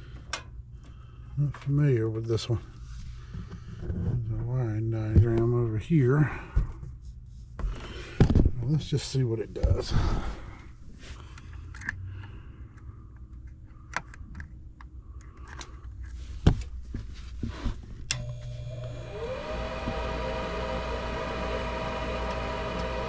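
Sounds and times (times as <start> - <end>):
inducer motor hum whining up: 18.1 - 23.0.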